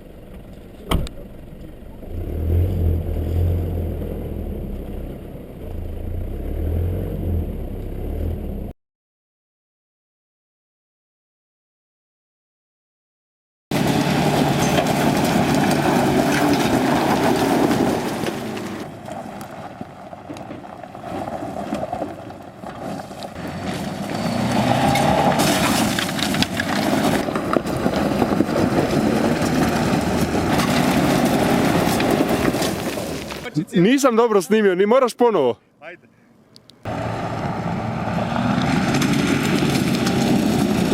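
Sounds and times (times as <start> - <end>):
engine running under load: 0.0 - 8.7, 13.7 - 33.5, 36.8 - 40.9.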